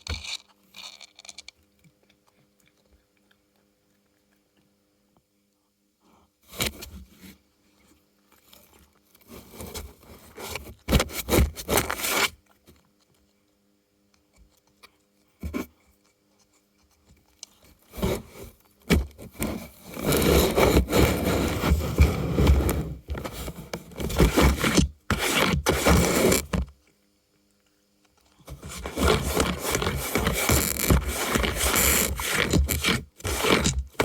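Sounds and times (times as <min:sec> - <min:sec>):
cardboard scraping and rubbing: 0:09.3 - 0:12.4, 0:17.9 - 0:26.7, 0:28.5 - 0:34.0.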